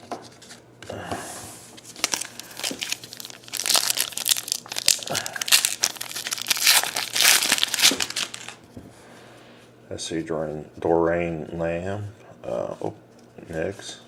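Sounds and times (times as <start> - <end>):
plastic wrapper crinkling and tearing: 1.8 - 8.6.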